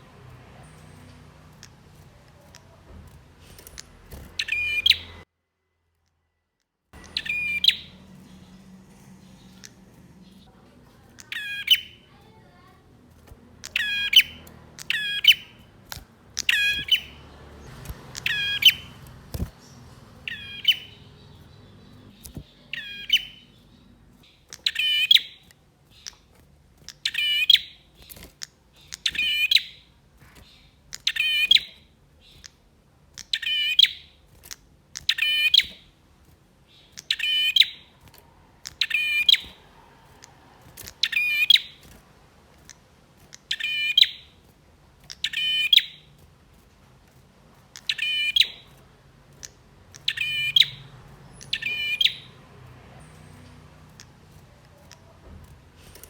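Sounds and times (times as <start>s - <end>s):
bird chattering call: 3.8s - 5.2s, 7.0s - 10.5s, 11.1s - 12.8s, 13.6s - 15.7s, 16.3s - 23.6s, 49.4s - 52.4s.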